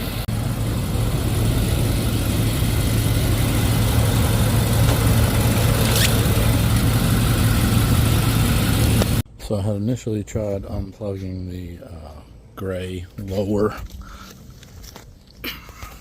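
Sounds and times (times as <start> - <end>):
car engine idling: 0.0 - 9.2.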